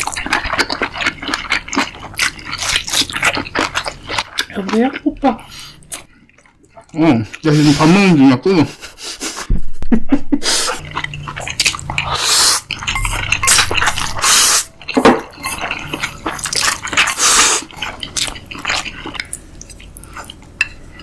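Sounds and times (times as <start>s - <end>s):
loud wet chewing and slurping: 0.0s - 8.1s, 10.5s - 21.0s.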